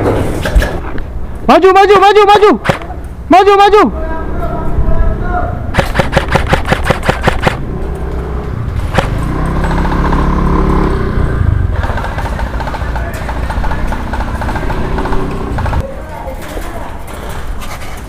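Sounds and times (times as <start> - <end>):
airsoft gun full-auto burst: 5.7 - 7.6, 11.8 - 15.8
airsoft gun single shot: 5.7 - 7.6
vehicle engine passing: 7.4 - 15.8.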